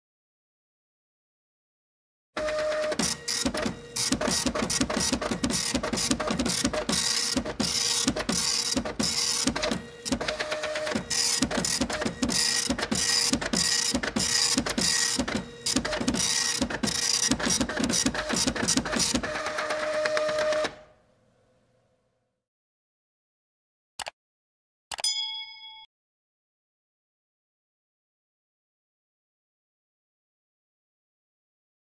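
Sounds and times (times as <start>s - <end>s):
printer clattering: 2.4s - 20.8s
printer motor whine: 2.4s - 20.8s.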